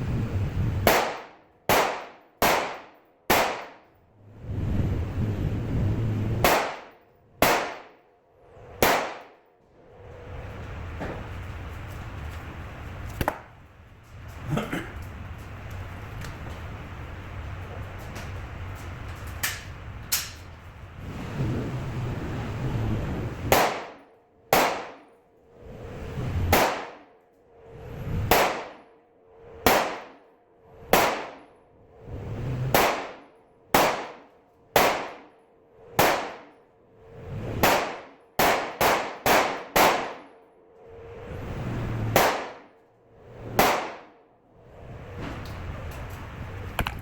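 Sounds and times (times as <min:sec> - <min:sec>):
pistol shots ringing: 0:06.4 - 0:07.9, 0:08.8 - 0:09.3.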